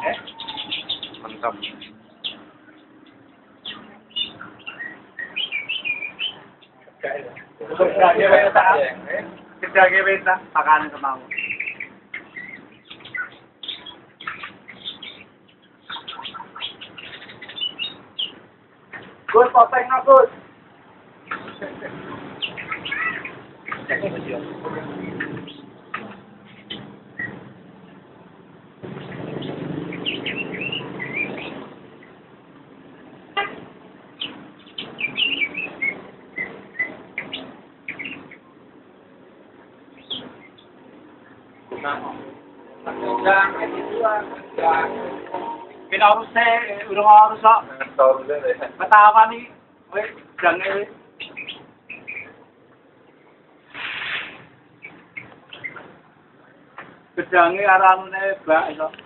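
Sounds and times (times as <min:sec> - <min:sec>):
bird chirping high notes: 0:00.0 - 0:06.7, 0:11.3 - 0:18.4, 0:28.8 - 0:32.2, 0:34.2 - 0:38.5, 0:51.2 - 0:52.4
vehicle engine running: 0:28.7 - 0:36.7.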